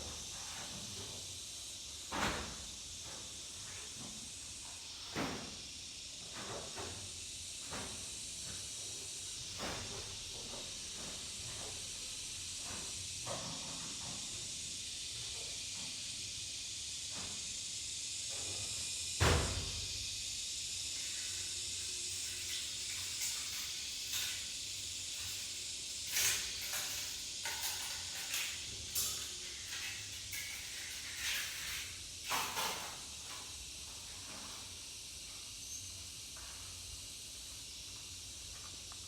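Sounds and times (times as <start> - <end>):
steady high hiss: 17.8 - 34.2.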